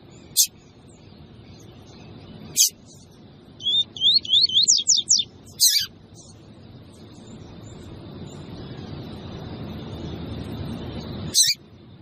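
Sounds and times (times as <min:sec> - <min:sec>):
thin high background tone: 0:00.1 - 0:06.4
songbird whistled notes: 0:03.6 - 0:05.9.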